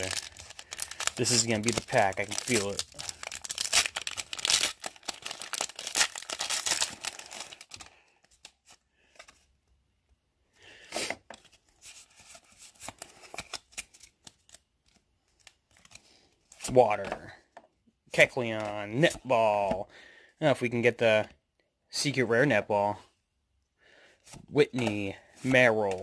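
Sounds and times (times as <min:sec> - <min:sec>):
foil wrapper tearing and crinkling: 0:00.0 - 0:08.6
cards rustling: 0:00.0 - 0:09.5, 0:10.8 - 0:17.4, 0:24.2 - 0:26.0.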